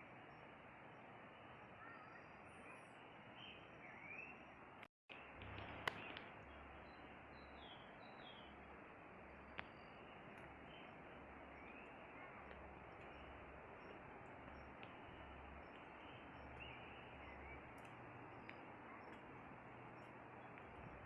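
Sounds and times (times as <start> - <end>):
bird chirps: 1.8 - 4.5, 5.6 - 8.6, 9.2 - 21.0
sharp clicks: 5.1 - 6.3.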